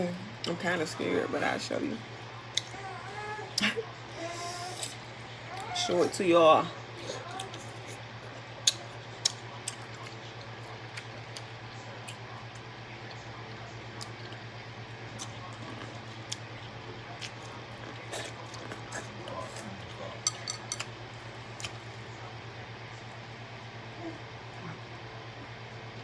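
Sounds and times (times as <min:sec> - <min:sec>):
steady low hum: 0:00.0 - 0:26.0
utensils clinking while eating: 0:17.8 - 0:20.9.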